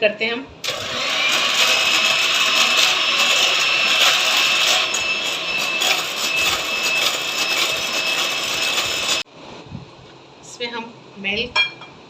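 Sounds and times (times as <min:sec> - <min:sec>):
electric hand mixer whining: 0:00.6 - 0:09.2.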